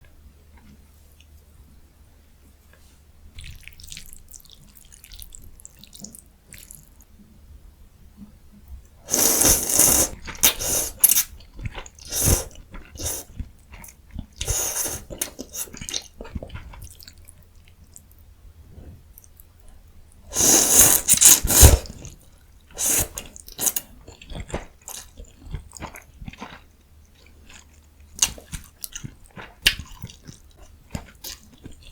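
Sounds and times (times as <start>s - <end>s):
soft chewing: 0.4s - 1.8s, 2.4s - 7.4s, 8.1s - 31.9s
wet slurping: 9.1s - 11.3s, 12.0s - 13.3s, 14.4s - 16.1s, 20.3s - 22.1s, 22.8s - 23.8s.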